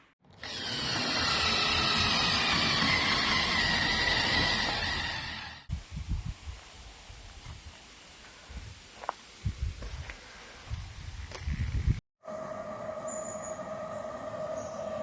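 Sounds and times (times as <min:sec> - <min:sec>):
power tool whining: 0:00.2 - 0:05.7.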